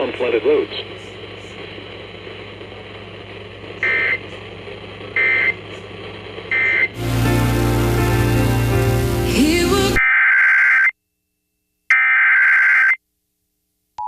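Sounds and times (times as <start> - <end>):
loud steady buzzing hum: 0.0 - 10.0.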